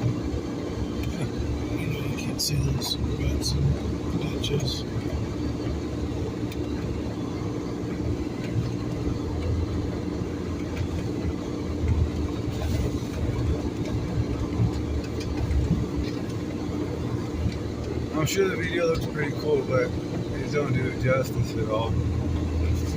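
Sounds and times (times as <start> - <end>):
road rumble: 0.0 - 22.9
vehicle engine hum: 0.0 - 22.9.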